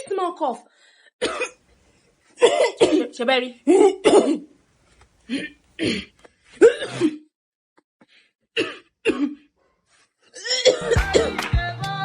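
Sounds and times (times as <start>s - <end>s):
man coughing: 2.4s - 3.1s, 3.7s - 4.5s, 5.3s - 7.3s.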